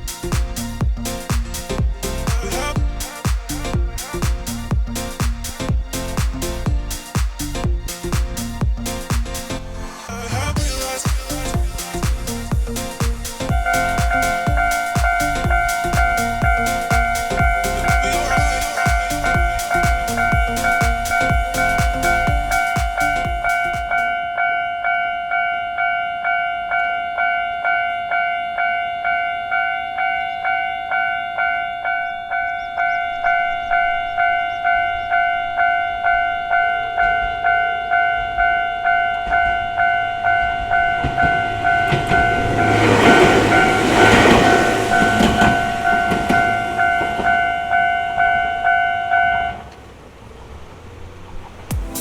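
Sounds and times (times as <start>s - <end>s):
train running noise: 10.5s - 24.2s, 38.2s - 52.0s
level crossing warning bell: 13.5s - 49.7s.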